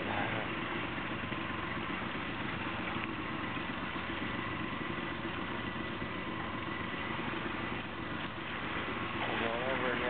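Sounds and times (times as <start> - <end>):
boat engine idling: 0.0 - 10.0.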